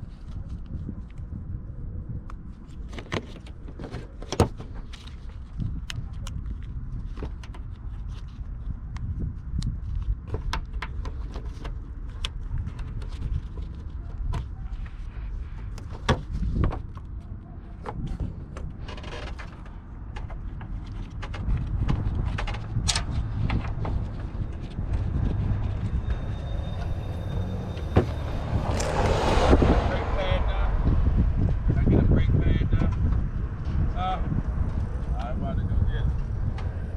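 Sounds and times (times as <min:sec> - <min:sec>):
low rumble: 0:16.5 - 0:36.9
tools and car parts clicking: 0:18.0 - 0:24.8.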